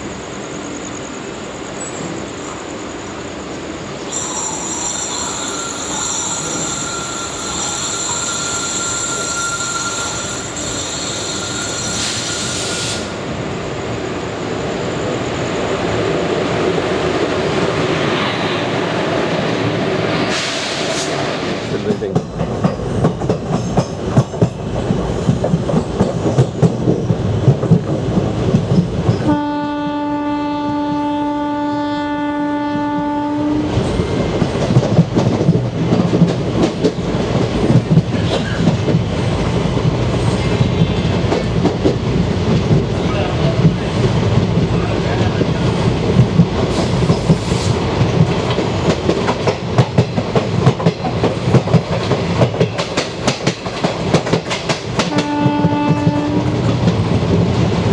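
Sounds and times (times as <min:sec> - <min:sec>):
train wheels clacking over rail joints: 0:20.2 - 0:29.4, 0:33.7 - 0:57.9
locomotive horn blast: 0:29.3 - 0:33.8, 0:55.1 - 0:56.6.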